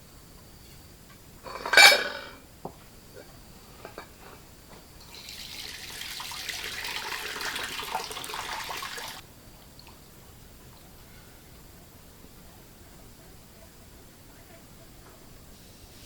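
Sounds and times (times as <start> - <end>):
tap water running into sink: 5.0 - 9.2.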